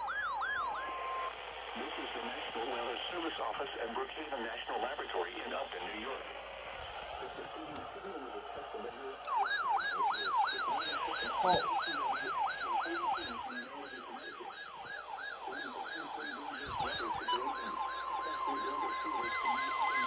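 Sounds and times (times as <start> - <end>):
electronic yelp siren: 0.0 - 1.9, 9.3 - 20.0
steady high alert tone: 9.3 - 20.0.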